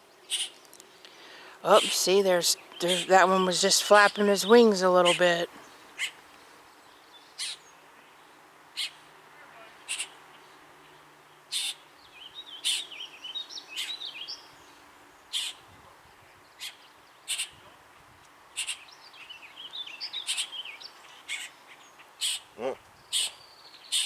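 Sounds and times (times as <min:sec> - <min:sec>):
bird twittering song: 0:09.8 - 0:15.6, 0:18.6 - 0:24.0.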